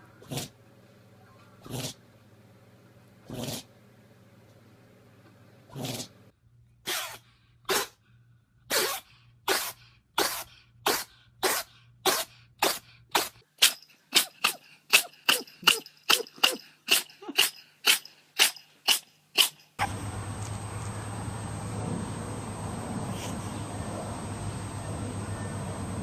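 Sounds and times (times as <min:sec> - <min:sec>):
animal sneezing: 0:00.2 - 0:00.6, 0:01.6 - 0:02.0, 0:03.3 - 0:03.7, 0:05.7 - 0:06.2, 0:06.9 - 0:08.0, 0:08.7 - 0:13.4.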